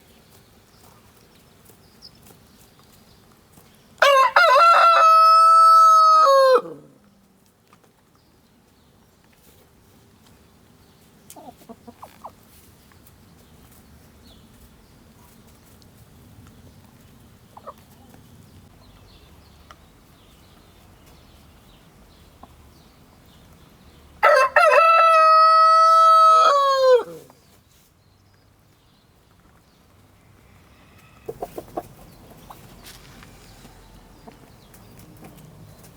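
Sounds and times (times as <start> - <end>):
rooster crowing: 4.0 - 6.9, 24.2 - 27.3
hens clucking softly: 11.2 - 13.1, 17.4 - 18.3, 30.2 - 35.4.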